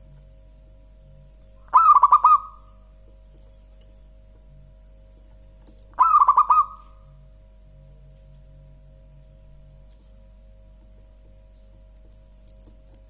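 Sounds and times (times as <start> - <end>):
dove cooing: 1.6 - 2.9, 5.9 - 7.2.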